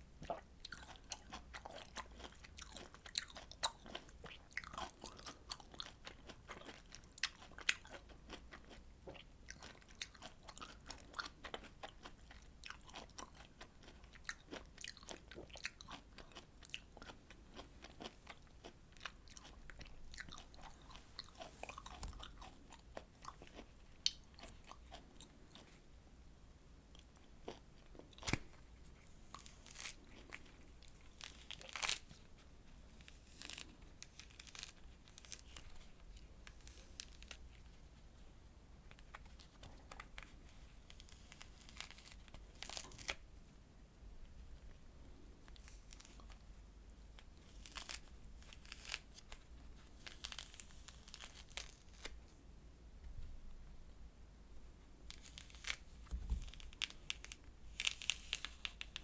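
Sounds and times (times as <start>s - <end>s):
chewing citrus fruit: 0.2s - 25.8s, 26.9s - 38.0s.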